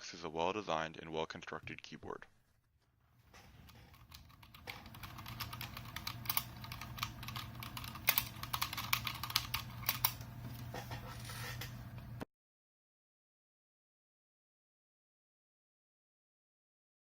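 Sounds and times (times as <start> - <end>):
mechanical keyboard key clicks: 4.2 - 10.2.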